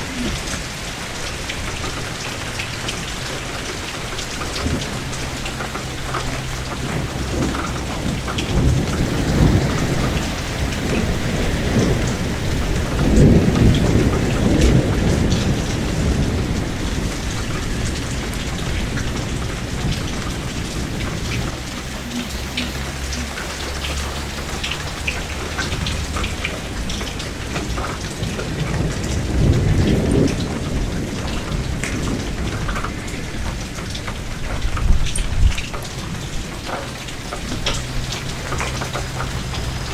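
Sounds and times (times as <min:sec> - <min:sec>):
steady rain: 0:00.0 - 0:39.9
thunder rumbling: 0:00.0 - 0:39.9.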